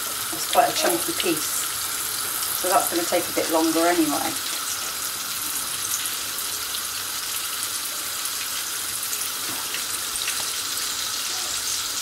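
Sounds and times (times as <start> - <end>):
chicken frying in oil: 0.0 - 12.0.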